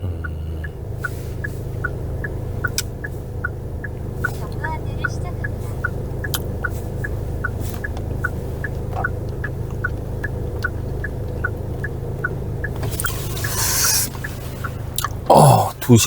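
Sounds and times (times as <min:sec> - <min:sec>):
taxi cabin low rumble: 0:00.0 - 0:16.0
turn signal ticking: 0:00.0 - 0:16.0
hiss: 0:13.0 - 0:14.3.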